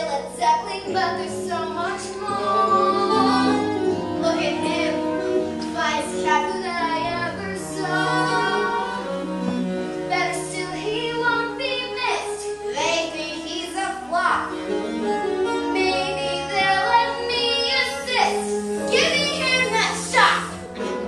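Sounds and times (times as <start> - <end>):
children and women singing: 1.6 - 3.8, 6.8 - 9.0.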